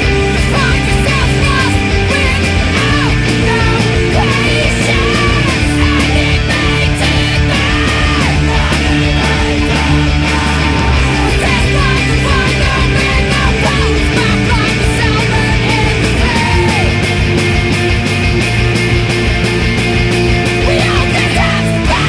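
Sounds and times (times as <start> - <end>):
rock band playing: 0.0 - 22.0
person yelling vocals: 0.4 - 17.1.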